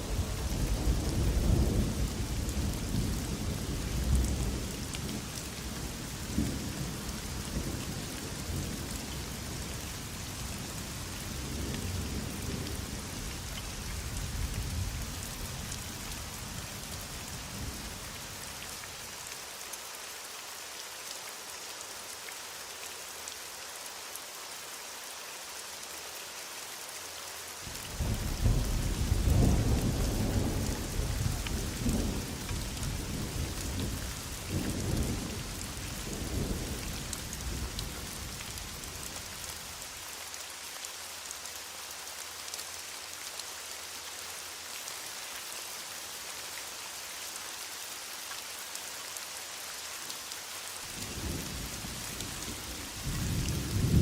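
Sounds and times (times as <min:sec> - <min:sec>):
heavy rain: 0:00.0 - 0:54.0
thunder rumbling: 0:53.1 - 0:54.0.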